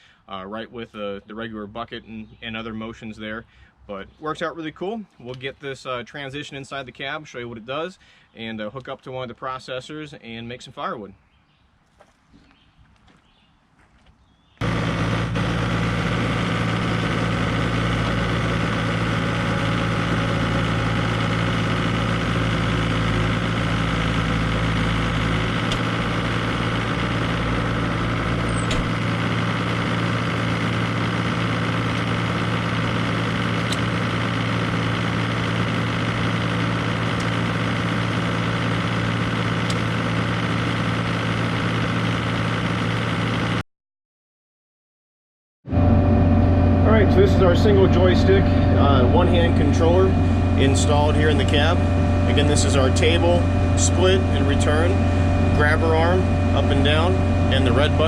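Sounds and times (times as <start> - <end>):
engine idling: 14.6 - 43.6, 45.7 - 58.0.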